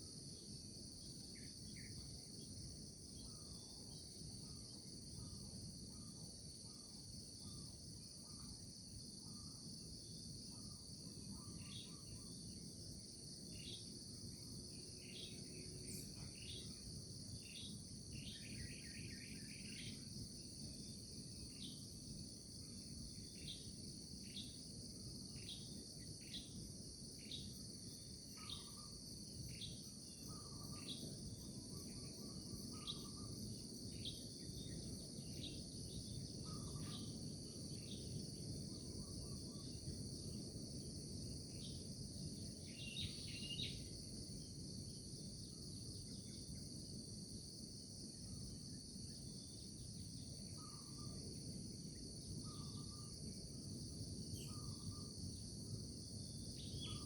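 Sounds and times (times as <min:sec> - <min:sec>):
crickets chirring: 0:00.0 - 0:57.0
bird chirps: 0:42.7 - 0:43.8, 0:56.6 - 0:57.0.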